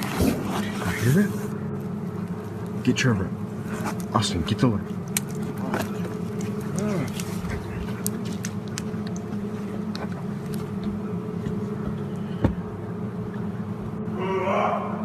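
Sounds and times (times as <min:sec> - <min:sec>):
steady low hum: 0:00.0 - 0:15.0
brief wavering cry: 0:14.1 - 0:15.0.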